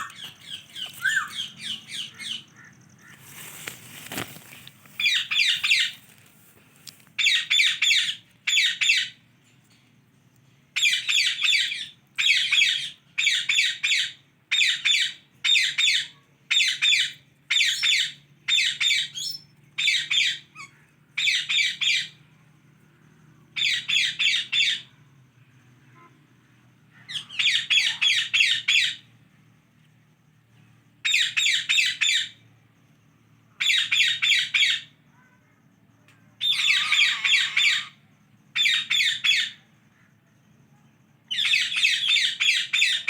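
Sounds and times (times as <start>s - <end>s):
parrot squawking: 0.0s - 2.5s, 36.4s - 38.0s.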